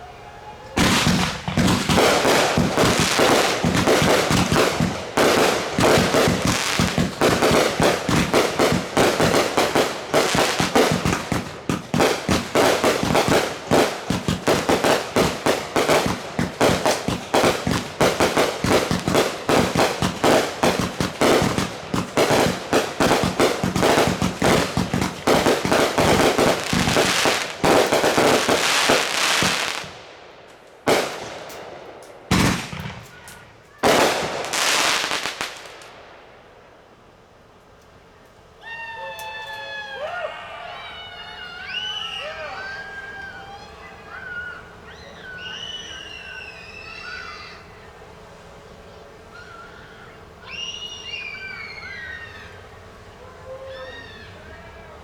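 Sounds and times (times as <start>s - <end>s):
fireworks bangs: 0.0s - 36.8s.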